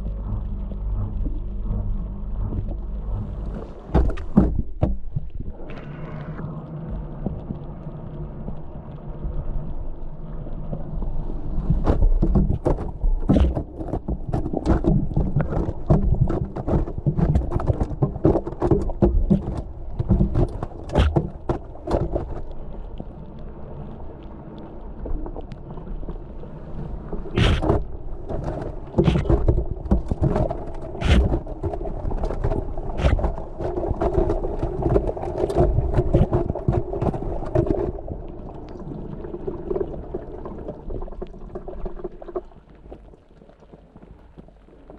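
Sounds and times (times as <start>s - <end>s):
steady hum: 0.0s - 10.6s, 18.6s - 35.0s
water sloshing in washing machine: 27.4s - 37.7s.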